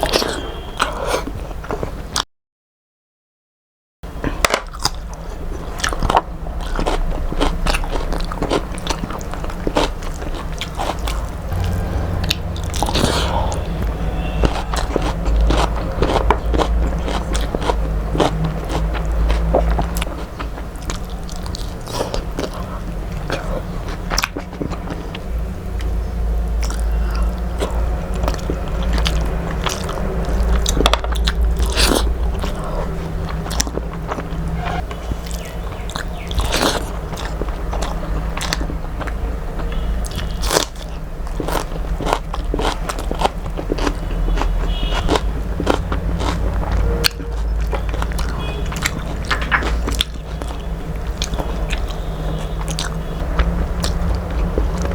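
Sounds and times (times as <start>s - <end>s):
steady low hum: 4.1s - 54.9s
person chewing and crunching: 4.2s - 54.9s
mouth clicks and smacks: 44.4s - 54.9s.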